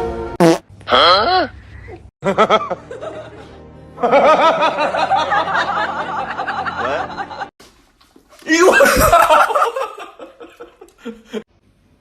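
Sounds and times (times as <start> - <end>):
music: 0.0 - 0.4, 2.2 - 7.5.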